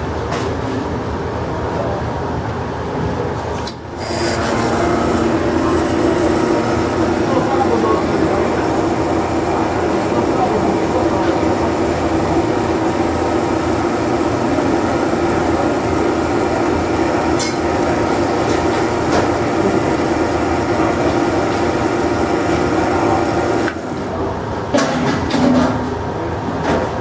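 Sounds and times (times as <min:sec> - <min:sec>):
espresso machine humming: 0:03.9 - 0:24.1.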